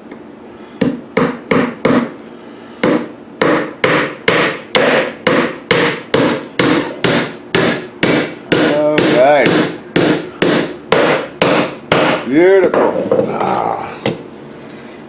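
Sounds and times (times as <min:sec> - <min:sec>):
hammer striking wood: 0:00.8 - 0:02.2, 0:02.8 - 0:13.3.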